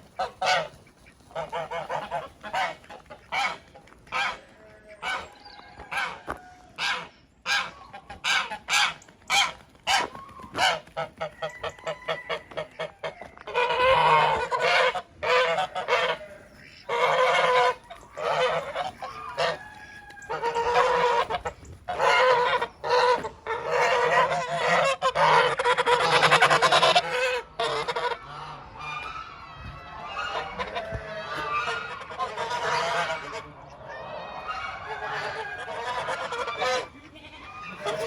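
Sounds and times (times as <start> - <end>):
geese honking: 0.0 - 38.0.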